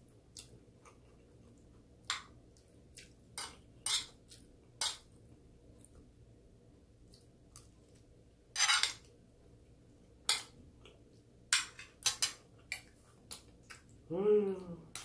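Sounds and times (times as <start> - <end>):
utensils clinking on a plate: 8.6 - 9.0.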